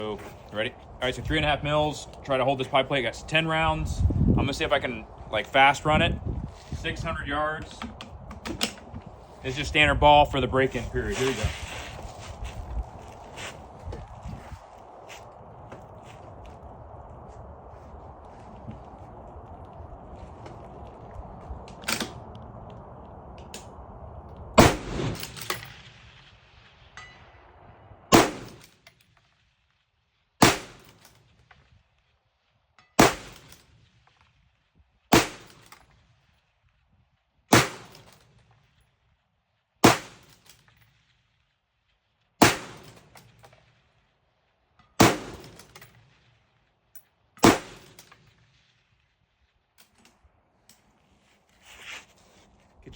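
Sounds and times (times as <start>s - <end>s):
rifle shots echoing: 24.6s - 26.4s, 28.1s - 28.7s, 30.4s - 31.0s, 33.0s - 33.6s, 35.1s - 35.7s, 37.5s - 38.1s, 39.8s - 40.4s, 42.4s - 43.4s, 45.0s - 46.2s, 47.4s - 48.6s.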